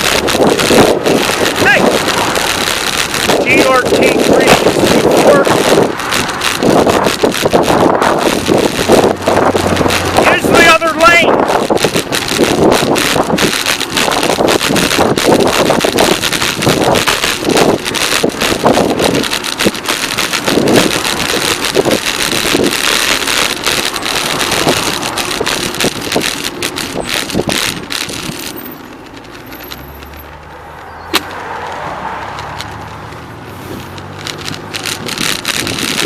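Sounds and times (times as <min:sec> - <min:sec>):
wind buffeting microphone: 0:00.0 - 0:30.1, 0:30.8 - 0:36.0
bicycle clatter and rattles: 0:00.0 - 0:36.0
sharp click: 0:31.1 - 0:31.8.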